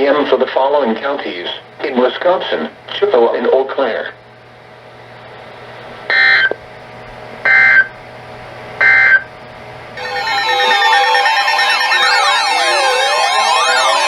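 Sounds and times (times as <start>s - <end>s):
wailing electronic sound: 10.0s - 14.0s.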